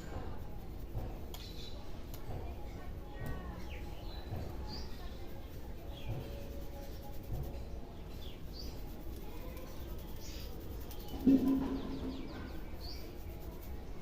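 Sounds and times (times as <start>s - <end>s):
birds chirping: 9.8s - 13.6s.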